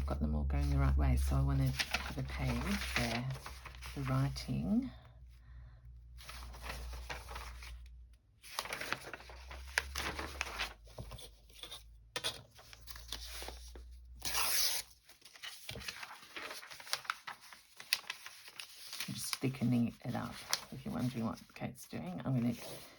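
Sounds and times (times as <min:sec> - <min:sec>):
paper rustling and tearing: 0:01.6 - 0:04.3, 0:06.2 - 0:07.8, 0:08.4 - 0:21.6.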